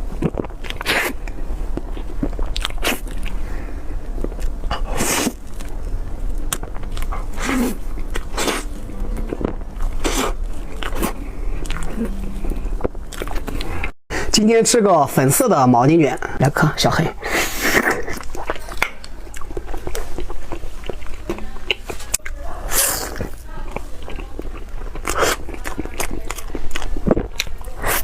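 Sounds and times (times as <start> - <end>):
person biting and chewing: 0.0 - 3.4, 4.1 - 9.1.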